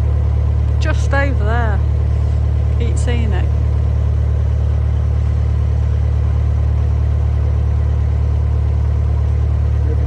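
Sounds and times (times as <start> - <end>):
diesel engine humming: 0.0 - 10.0.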